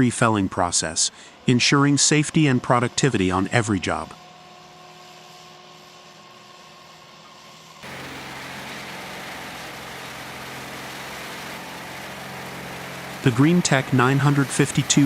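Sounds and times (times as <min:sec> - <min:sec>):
heavy machine engine running: 0:07.8 - 0:15.0.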